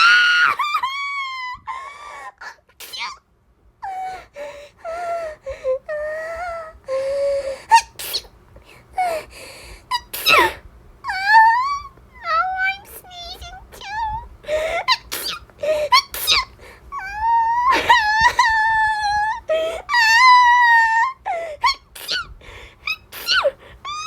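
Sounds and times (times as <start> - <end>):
high-pitched whining cries: 0.0 - 3.2, 9.9 - 24.0
sharp gasping breaths: 8.6 - 9.9, 22.3 - 22.8.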